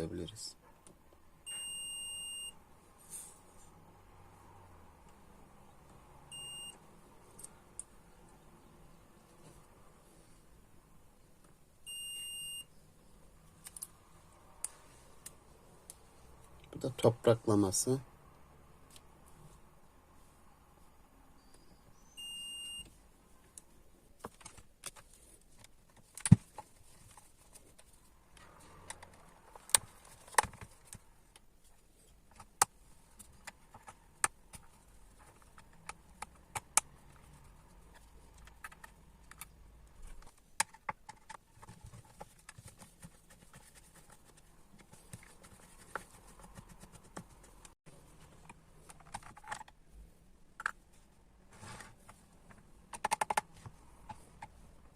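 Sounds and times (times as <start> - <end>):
multimeter beep: 1.4 - 2.6, 6.3 - 6.8, 11.9 - 12.7, 22.1 - 22.9.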